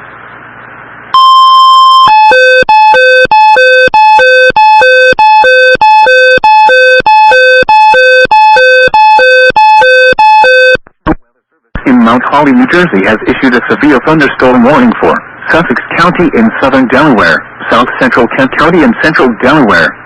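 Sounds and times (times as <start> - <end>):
steady alert beep: 1.2 - 10.8.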